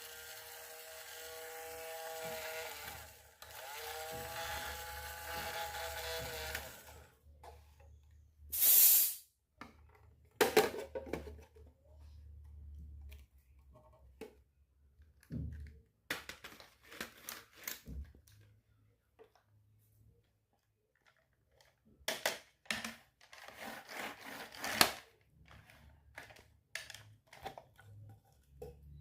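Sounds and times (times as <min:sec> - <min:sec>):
short loud hiss: 0:08.5 - 0:09.3
clicks and rustles of small toys: 0:11.0 - 0:28.8.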